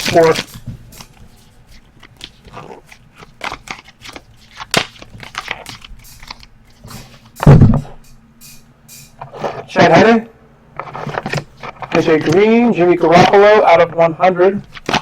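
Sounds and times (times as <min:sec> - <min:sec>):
card wrappers crinkling: 0:00.0 - 0:06.8, 0:14.6 - 0:15.0
loud thump: 0:07.4 - 0:08.0.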